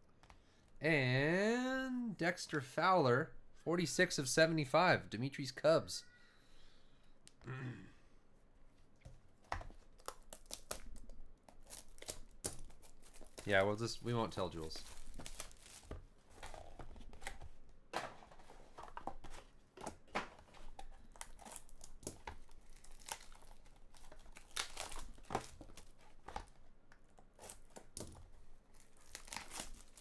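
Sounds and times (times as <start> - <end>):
wrappers crinkling and tearing: 9.8 - 16.8, 20.7 - 30.0.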